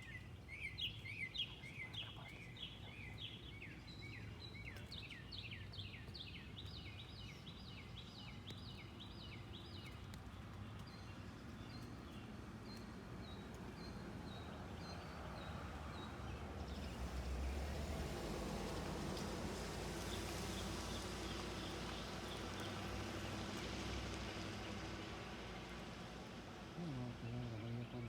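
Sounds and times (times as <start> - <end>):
low outdoor rumble: 13.0 - 28.0.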